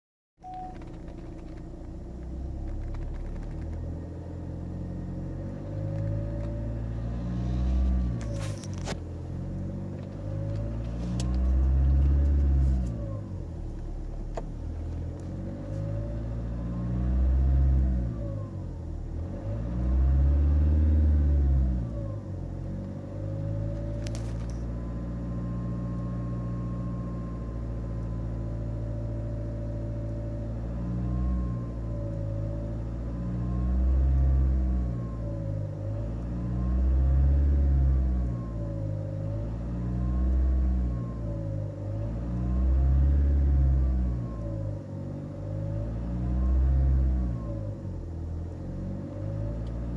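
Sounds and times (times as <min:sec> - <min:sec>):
diesel engine revving: 0:00.8 - 0:49.9.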